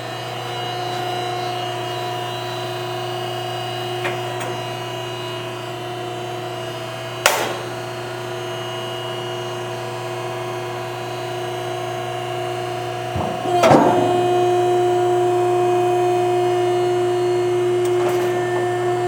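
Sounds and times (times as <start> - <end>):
baler machine hum: 12.2 - 19.0.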